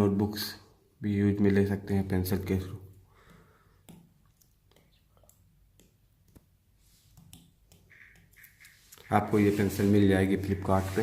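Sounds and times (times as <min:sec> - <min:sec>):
stylus tapping on glass screen: 0:04.8 - 0:06.5.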